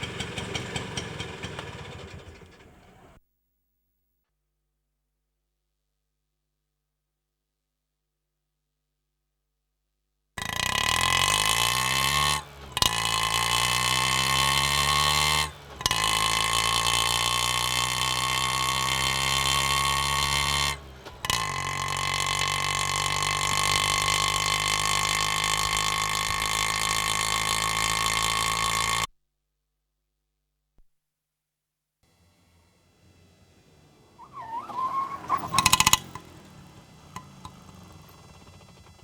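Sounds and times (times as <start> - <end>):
auto rickshaw engine: 0.0 - 3.2, 10.4 - 29.1, 32.0 - 39.0
gear shift click: 35.4 - 36.3.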